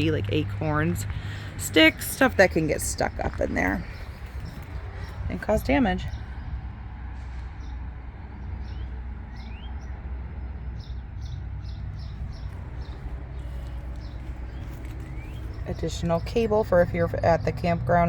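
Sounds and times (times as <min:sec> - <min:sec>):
small birds chirping: 0:00.0 - 0:06.7, 0:07.5 - 0:18.0
steady low rumble: 0:00.0 - 0:18.0.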